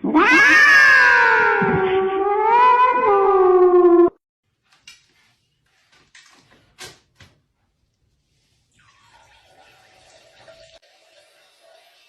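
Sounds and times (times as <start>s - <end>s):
cat yowling: 0.0s - 4.1s.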